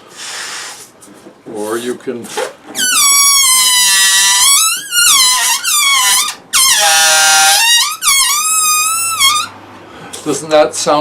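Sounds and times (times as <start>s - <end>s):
air squealing out of a balloon: 0.0s - 0.9s, 2.3s - 9.6s.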